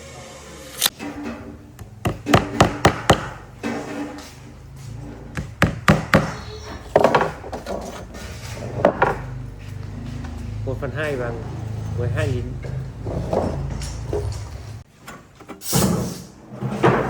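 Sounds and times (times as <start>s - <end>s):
sharp knocks and taps on wood: 2.0s - 3.4s, 5.4s - 7.3s.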